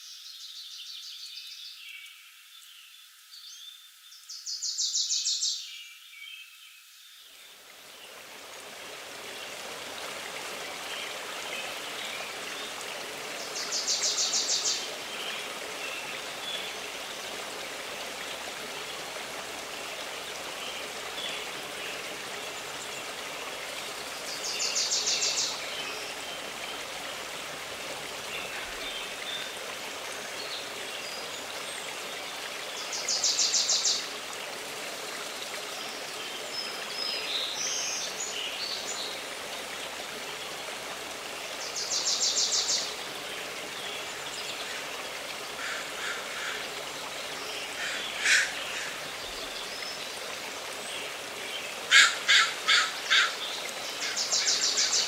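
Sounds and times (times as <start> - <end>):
stream running: 0.0 - 55.0.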